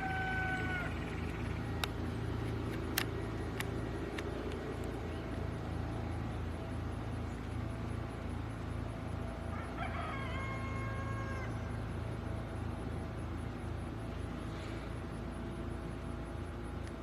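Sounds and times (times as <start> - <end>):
low pulsing engine rumble: 0.0 - 17.0
sharp clicks: 1.6 - 5.0.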